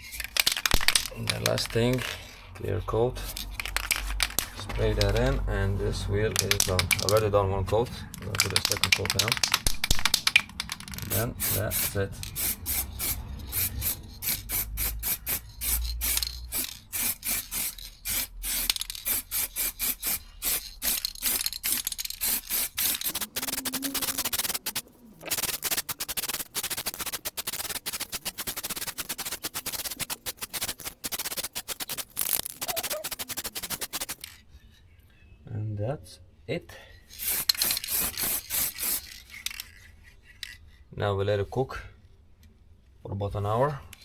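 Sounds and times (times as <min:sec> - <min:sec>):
spray paint hissing: 0:00.0 - 0:02.5, 0:03.2 - 0:05.5, 0:06.3 - 0:07.2, 0:08.1 - 0:34.4, 0:37.1 - 0:39.8.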